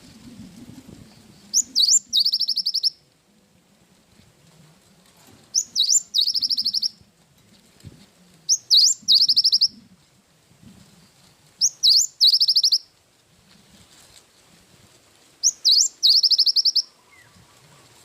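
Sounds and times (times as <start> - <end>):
bird singing trills: 1.5 - 3.0, 5.6 - 7.0, 8.5 - 9.8, 11.6 - 12.8, 15.4 - 17.3.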